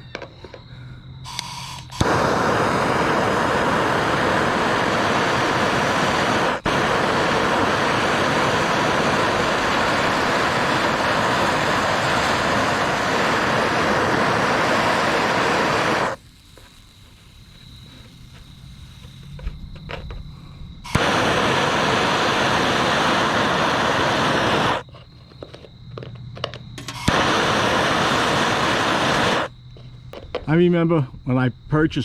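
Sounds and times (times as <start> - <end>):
torch flame hissing: 1.2 - 19.7, 20.3 - 24.9, 26.8 - 29.5
torch igniter click: 1.3 - 16.2, 20.9 - 24.8, 26.8 - 29.5.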